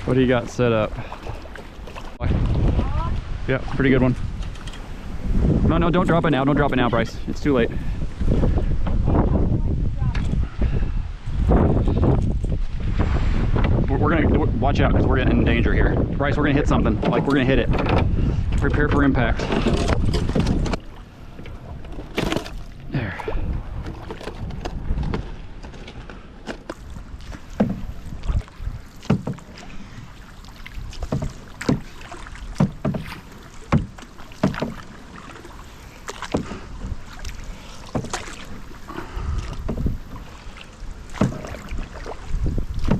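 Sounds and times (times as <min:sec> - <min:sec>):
water noise: 0:00.0 - 0:42.9
knocks against boat hull: 0:27.6 - 0:27.9, 0:29.0 - 0:29.5, 0:32.6 - 0:34.8, 0:39.6 - 0:40.0, 0:41.1 - 0:41.6.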